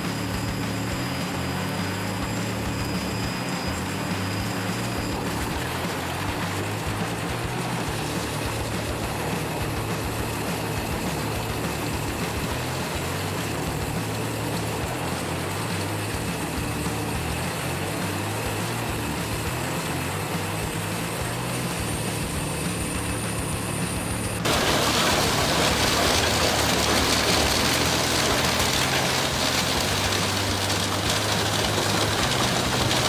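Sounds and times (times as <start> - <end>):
wood chipper running: 0.0 - 33.0.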